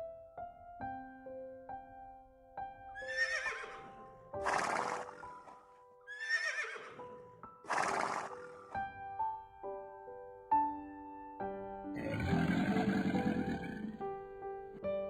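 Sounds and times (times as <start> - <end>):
piano music: 0.0 - 6.1, 6.9 - 15.0
horse whinnying: 3.0 - 7.1, 7.7 - 8.8, 12.0 - 14.0
horse snorting: 4.4 - 5.6, 7.7 - 8.7, 12.0 - 14.0.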